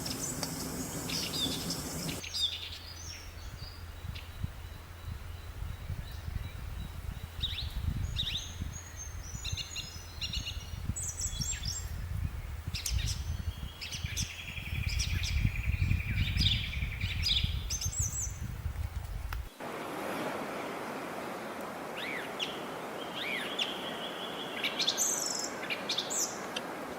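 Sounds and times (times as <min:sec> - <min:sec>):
bird trilling: 0:00.0 - 0:02.2
birds chirping and calling: 0:00.0 - 0:02.2
low wind rumble: 0:00.0 - 0:02.2, 0:03.4 - 0:24.8
steady hiss: 0:00.0 - 0:02.2.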